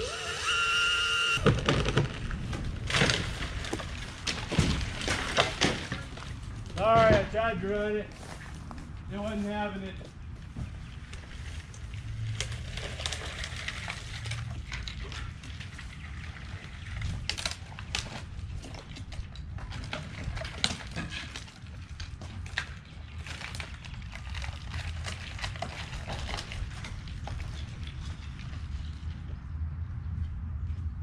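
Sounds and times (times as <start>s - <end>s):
steady low rumble: 23.9s - 31.0s.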